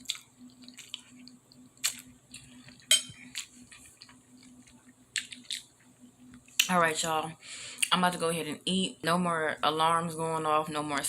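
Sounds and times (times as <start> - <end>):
faint steady hum: 0.0 - 11.0
cutlery clinking on plate: 2.9 - 3.2.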